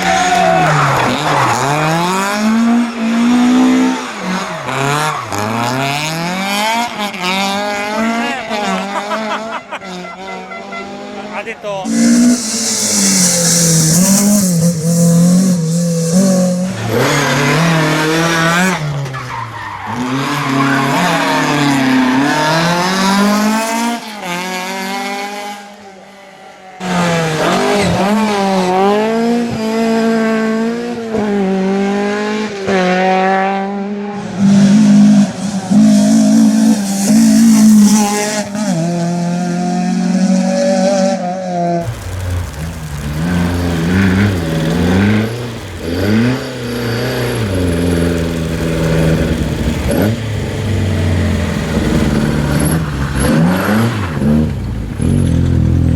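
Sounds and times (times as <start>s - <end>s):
rally car engine revving: 0.0s - 55.9s
tyre noise hiss: 11.8s - 17.0s, 41.8s - 53.2s.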